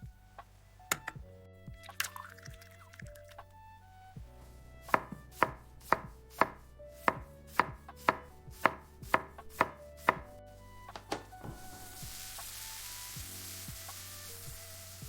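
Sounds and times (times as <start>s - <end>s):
knife chopping on wooden board: 4.9s - 10.3s.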